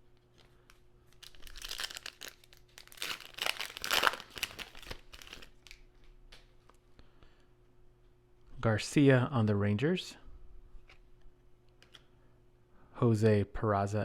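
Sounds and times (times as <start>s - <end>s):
card pack wrapper crinkling: 0.3s - 6.1s.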